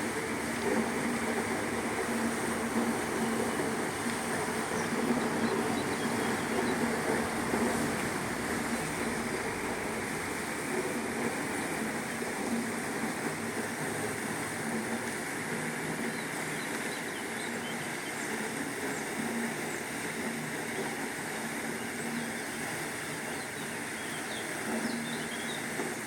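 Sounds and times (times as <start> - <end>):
steady rushing noise: 0.0 - 16.4.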